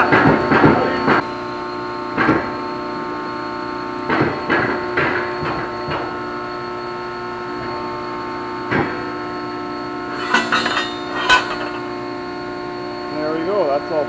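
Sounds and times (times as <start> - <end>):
metal clanks: 10.1 - 12.0.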